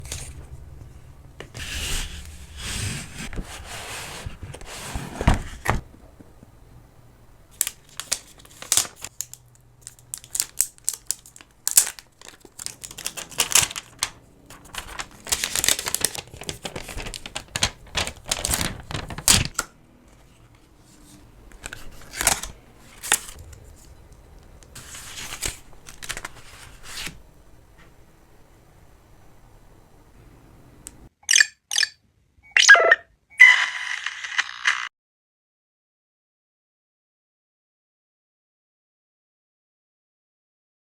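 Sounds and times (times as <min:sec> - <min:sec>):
packaging tearing and crinkling: 0:07.6 - 0:19.6, 0:21.6 - 0:23.6, 0:24.8 - 0:27.2.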